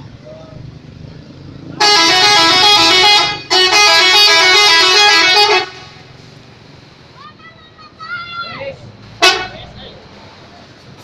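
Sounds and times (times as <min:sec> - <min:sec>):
bus musical horn blasts: 0:01.8 - 0:06.0, 0:09.2 - 0:09.7.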